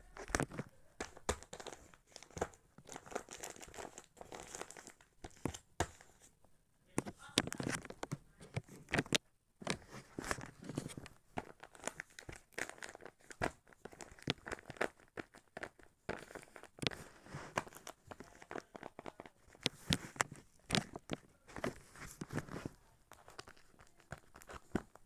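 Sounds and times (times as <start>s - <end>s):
paper crinkling and crackling: 0.0s - 6.3s, 6.9s - 25.0s.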